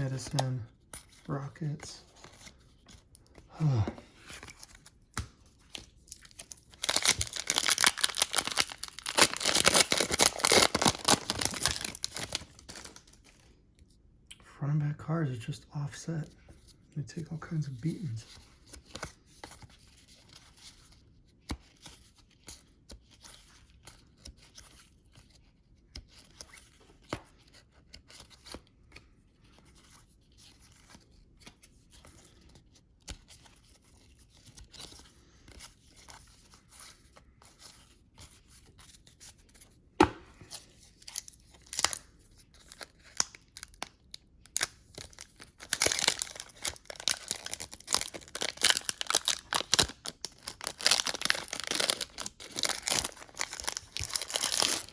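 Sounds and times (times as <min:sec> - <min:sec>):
paper wrapper rustling and tearing: 0:05.8 - 0:13.3, 0:40.7 - 0:54.9
cards clicking and tapping: 0:40.0 - 0:40.6.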